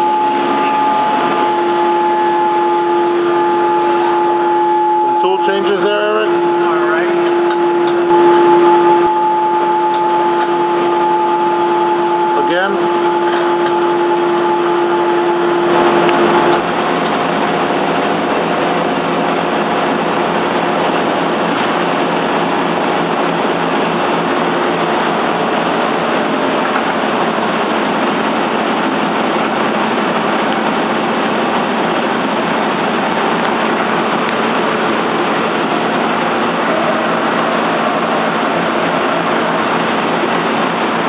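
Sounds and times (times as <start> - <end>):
lathe running: 0.0 - 41.0
steady hum: 0.0 - 41.0.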